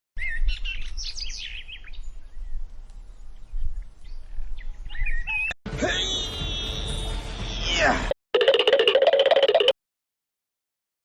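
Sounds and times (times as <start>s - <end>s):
birds chirping: 0.2s - 7.7s.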